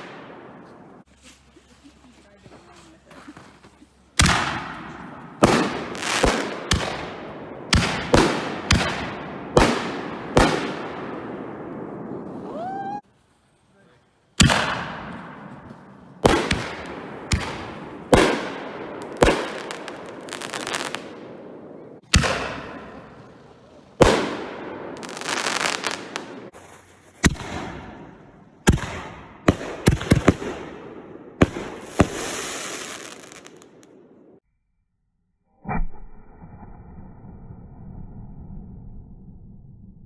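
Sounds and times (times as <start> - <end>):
firework bangs echoing: 0.0 - 1.1, 4.2 - 13.0, 14.4 - 34.4
firework crackling: 4.0 - 34.4.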